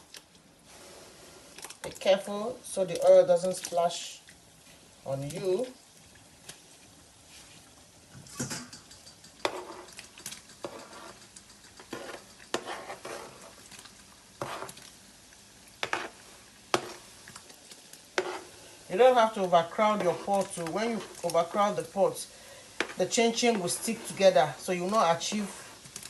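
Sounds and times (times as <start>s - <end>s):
oil sizzling: 0.0s - 26.0s
spoon scraping a pot: 8.2s - 13.7s, 14.4s - 14.9s, 15.8s - 17.1s, 18.2s - 18.6s, 19.7s - 21.8s, 22.8s - 26.0s.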